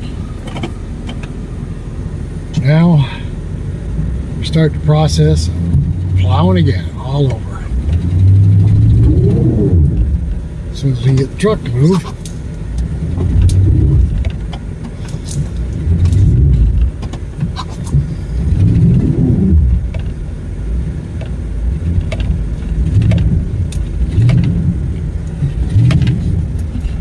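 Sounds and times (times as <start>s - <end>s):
truck engine revving: 0.0s - 27.0s
sharp clicks and knocks: 0.4s - 1.4s, 11.1s - 20.2s, 21.0s - 27.0s.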